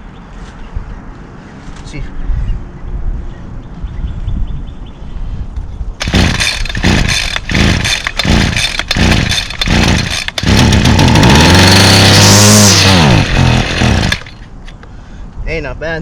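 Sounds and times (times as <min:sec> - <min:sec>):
string trimmer engine surging: 0:06.0 - 0:14.5.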